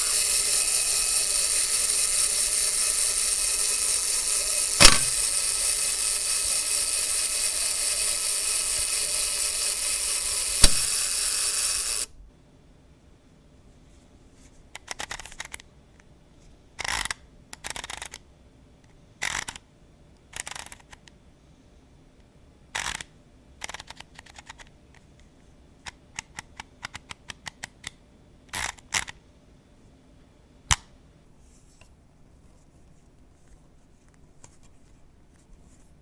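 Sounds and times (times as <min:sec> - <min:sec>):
scraping or snipping strokes: 0:00.0 - 0:12.2
light clicks: 0:00.1 - 0:12.1.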